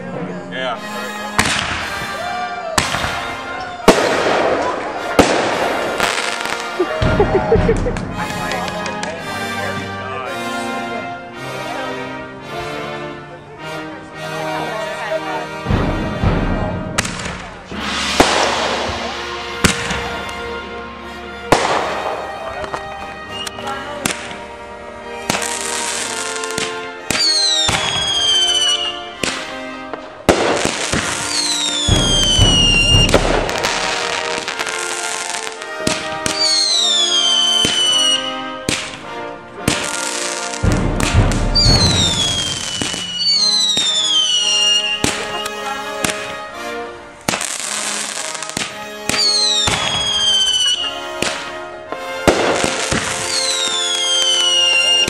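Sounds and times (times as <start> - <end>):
music playing: 0.0 - 55.0
fireworks popping and crackling: 3.9 - 9.2, 17.0 - 20.5, 21.5 - 24.4, 25.2 - 39.0, 39.7 - 46.3, 47.3 - 55.0
descending firework whistles: 17.7 - 20.2, 31.2 - 33.4, 41.6 - 45.2, 53.3 - 55.0
firework whistle falling in pitch: 31.3 - 33.7, 41.6 - 45.6, 49.2 - 50.9.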